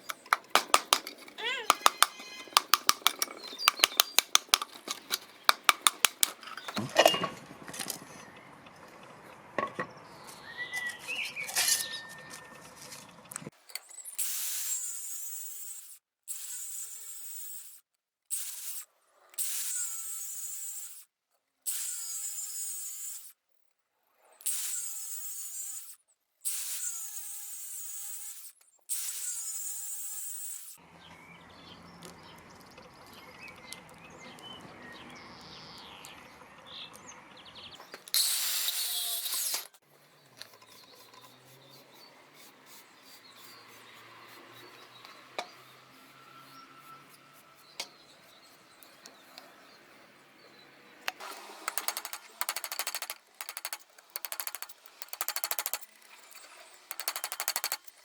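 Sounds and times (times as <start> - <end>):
sharp clicks: 0.0 - 6.9, 51.1 - 58.0
tool clatter: 0.0 - 6.9, 51.2 - 58.0.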